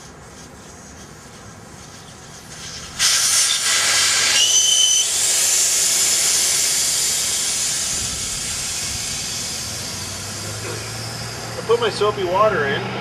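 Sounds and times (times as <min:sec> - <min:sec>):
air hissing out of tire: 0:00.0 - 0:11.9.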